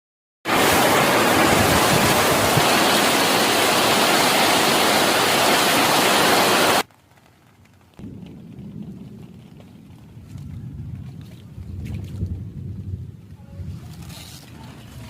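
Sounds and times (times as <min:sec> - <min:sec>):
heavy rain downpour: 0:00.5 - 0:15.0.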